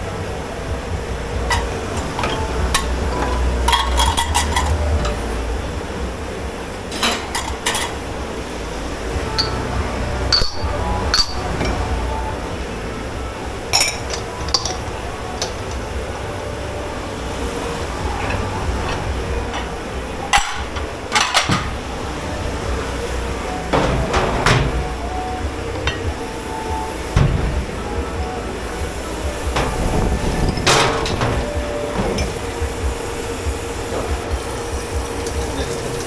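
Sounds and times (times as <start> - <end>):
steady low hum: 0.0 - 36.0
pots and pans clanking: 1.3 - 5.5, 6.9 - 8.2, 9.2 - 12.1, 13.7 - 16.0, 17.8 - 32.7.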